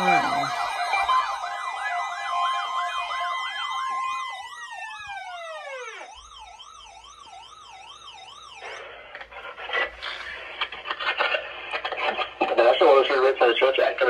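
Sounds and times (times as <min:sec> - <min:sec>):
wailing siren tone: 0:00.0 - 0:09.0
radio static hiss: 0:08.6 - 0:14.0.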